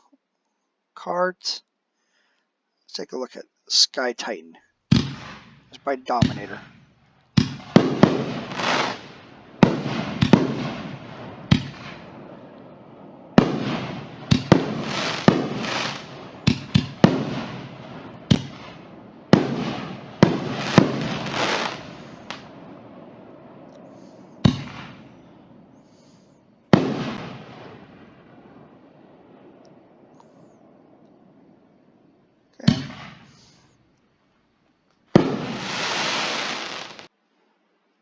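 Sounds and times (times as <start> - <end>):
fireworks aerial bangs: 4.9 - 31.7, 32.6 - 33.8, 35.1 - 37.1.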